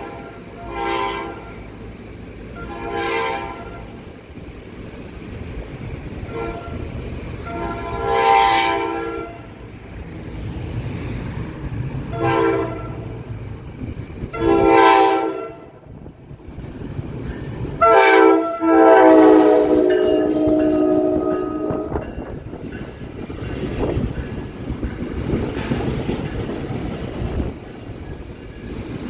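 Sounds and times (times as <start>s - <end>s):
train air horn blasts: 0.0s - 1.6s, 2.6s - 4.0s, 6.3s - 9.6s, 12.1s - 13.1s, 14.3s - 15.7s, 17.8s - 22.2s
low train rumble: 0.0s - 29.0s.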